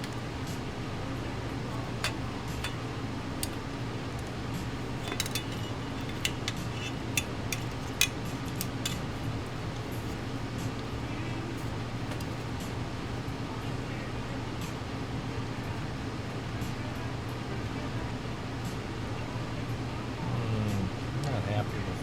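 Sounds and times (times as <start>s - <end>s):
steady low hum: 0.0s - 22.0s
small metal parts clinking: 1.7s - 3.6s, 4.2s - 10.2s.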